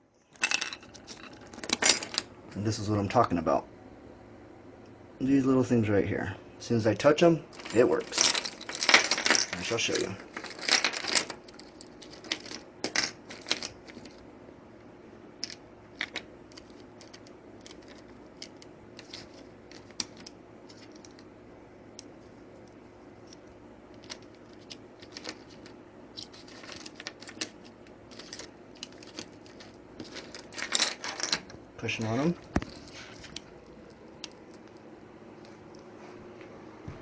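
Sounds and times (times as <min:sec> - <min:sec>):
faint steady hum: 0:00.0 - 0:37.0.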